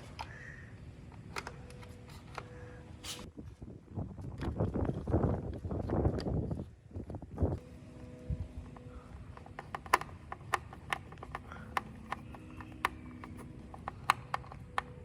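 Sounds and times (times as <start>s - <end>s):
sharp irregular clicks and taps: 8.8s - 15.0s.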